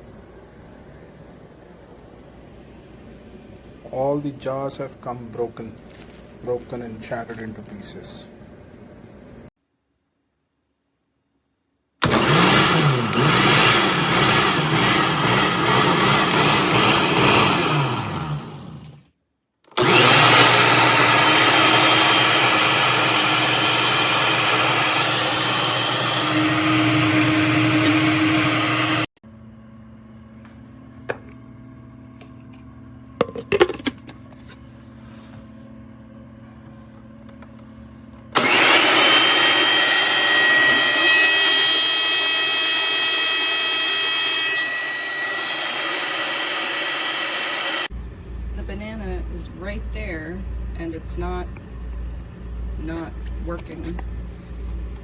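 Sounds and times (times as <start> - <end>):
blender motor running: 12.0 - 19.0, 19.8 - 29.1, 38.4 - 48.2.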